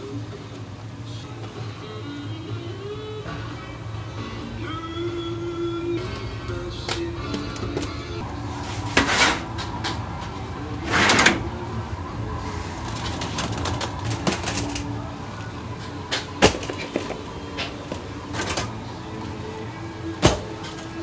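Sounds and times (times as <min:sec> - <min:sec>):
low hum: 0:00.0 - 0:21.0
scraping: 0:03.3 - 0:19.6.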